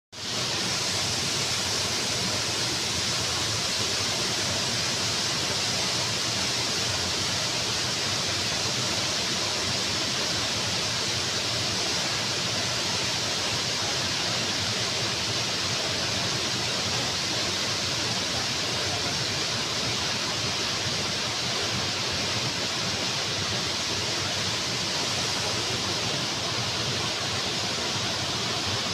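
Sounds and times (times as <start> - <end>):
waterfall rushing: 0.2 - 28.9.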